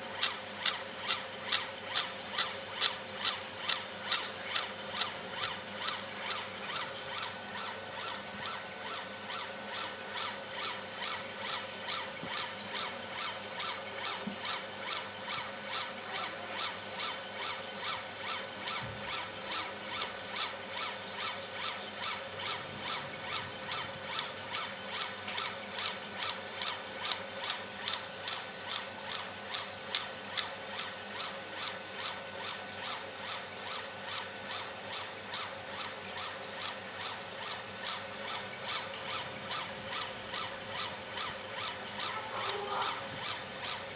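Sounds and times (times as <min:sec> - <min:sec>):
laser head whirring strokes: 0:00.2 - 0:43.9
steady hum: 0:39.5 - 0:43.9.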